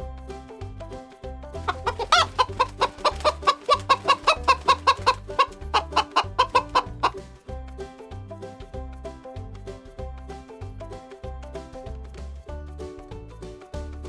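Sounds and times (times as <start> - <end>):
background music: 0.0 - 14.0
chicken clucking: 1.5 - 7.3.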